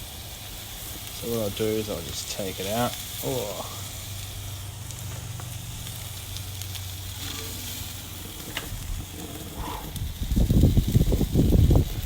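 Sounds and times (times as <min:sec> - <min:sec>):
food sizzling on a hotplate: 0:00.0 - 0:12.0
low rumbling on microphone: 0:03.8 - 0:12.0.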